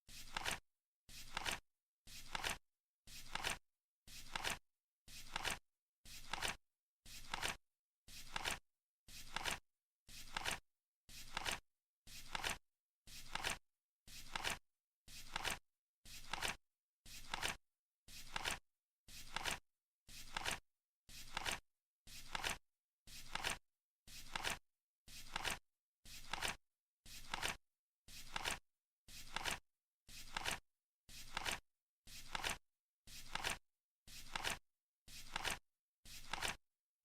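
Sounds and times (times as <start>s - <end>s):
flip clock card flipping: 4.2s - 4.6s, 5.3s - 5.6s, 6.2s - 6.6s, 7.2s - 7.6s, 9.3s - 9.6s, 19.3s - 19.6s, 29.3s - 29.6s, 30.3s - 30.6s, 31.3s - 31.6s, 36.2s - 36.6s.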